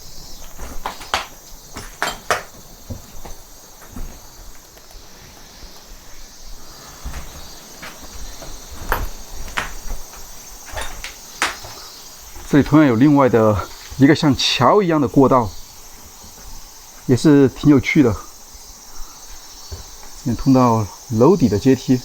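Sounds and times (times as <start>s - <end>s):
high-pitched insect chorus: 0.0s - 22.0s
clicks and knocks: 0.4s - 3.0s.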